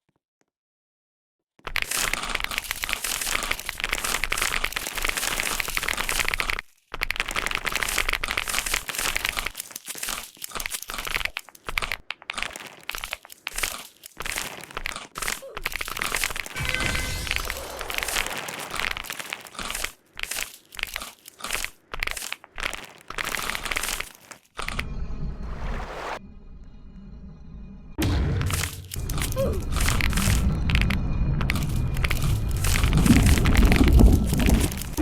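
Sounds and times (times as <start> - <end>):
fast keyboard typing: 1.7 - 16.6, 17.4 - 24.8, 28.5 - 35.0.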